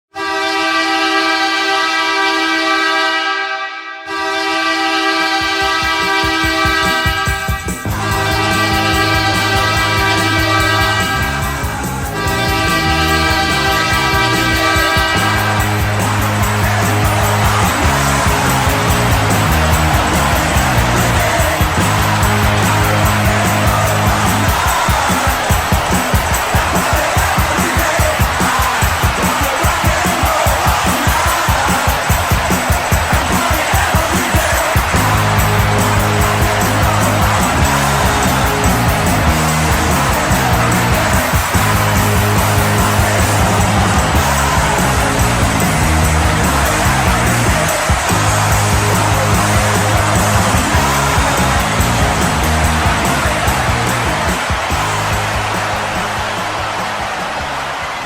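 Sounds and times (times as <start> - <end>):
arena crowd noise: 0.0 - 58.0
goal horn blasts: 0.1 - 31.8
drum beat: 5.5 - 58.0.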